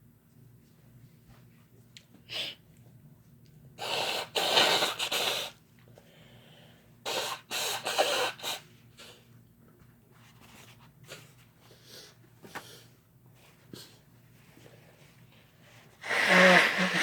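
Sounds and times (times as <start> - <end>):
person sneezing: 16.0 - 17.0.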